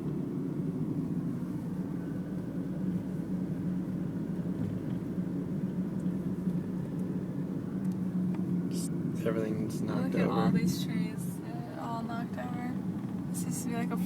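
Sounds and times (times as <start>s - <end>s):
car engine: 0.0s - 14.0s
road noise: 0.0s - 14.0s.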